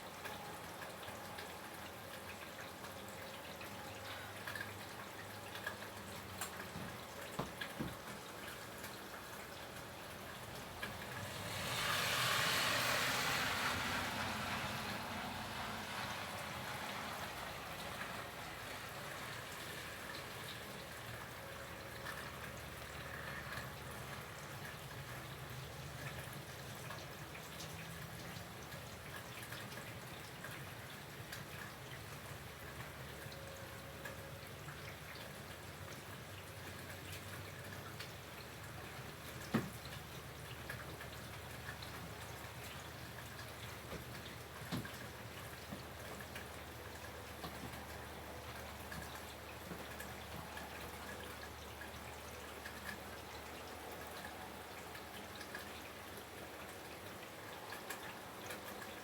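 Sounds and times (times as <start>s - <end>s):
steady rain: 0.0s - 59.0s
water drips and patters: 0.0s - 59.0s.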